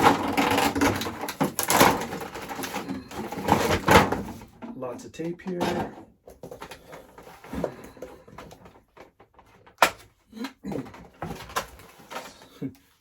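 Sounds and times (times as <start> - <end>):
cardboard rustling and scraping: 0.0 - 4.6, 10.7 - 12.6.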